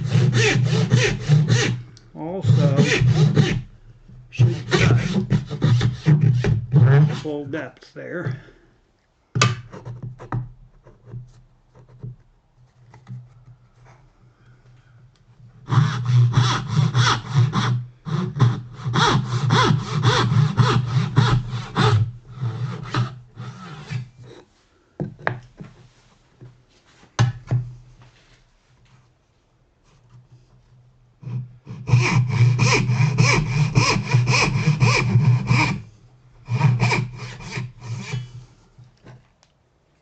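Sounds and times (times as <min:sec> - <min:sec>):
hand saw cutting wood: 0:00.0 - 0:03.7, 0:04.3 - 0:07.4, 0:15.6 - 0:24.4, 0:31.2 - 0:38.5.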